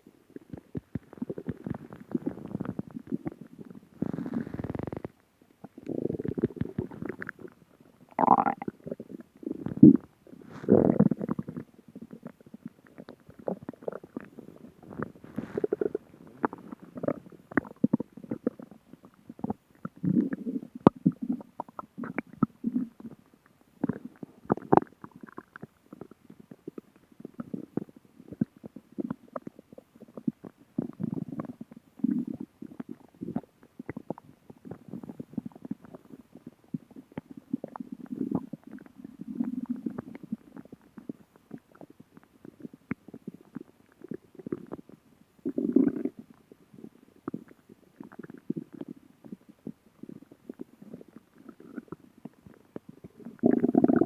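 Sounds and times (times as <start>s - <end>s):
stomach growling and gurgling: 0.0s - 54.0s.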